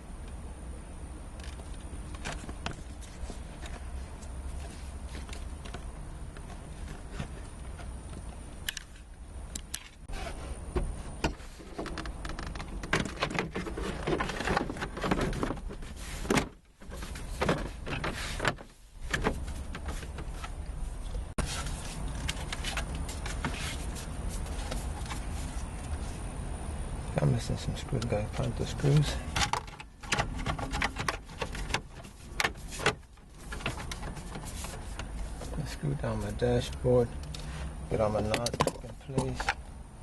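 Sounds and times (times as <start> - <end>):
steady low hum: 0.0 - 40.0
plastic parts clicking and rattling: 11.6 - 20.3, 29.3 - 35.1.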